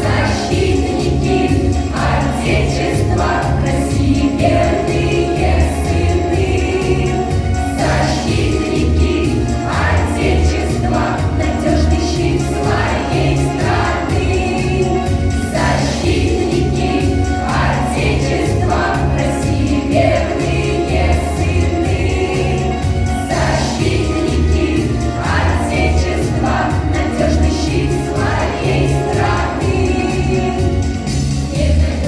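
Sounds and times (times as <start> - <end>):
children singing: 0.0 - 30.8, 31.5 - 32.0.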